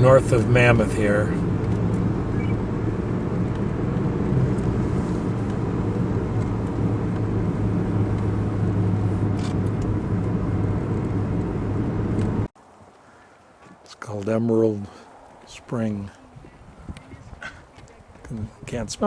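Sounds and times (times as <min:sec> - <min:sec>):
car engine: 0:00.0 - 0:12.5
road noise: 0:00.0 - 0:19.0.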